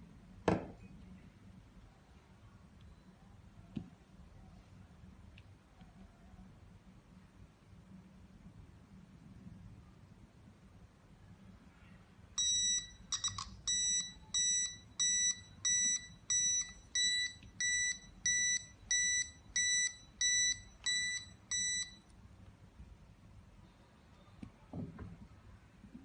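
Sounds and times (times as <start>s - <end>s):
high-pitched alarm beeping: 12.4s - 22.0s.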